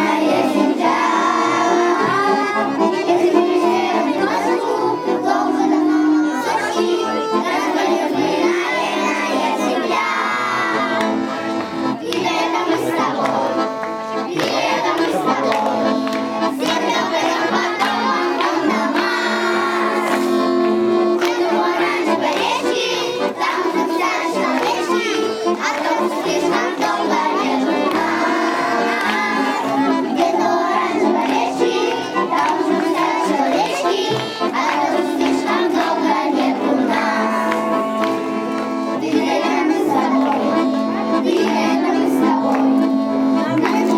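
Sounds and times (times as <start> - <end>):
children singing: 0.0 - 43.9
instrumental music: 0.0 - 43.9.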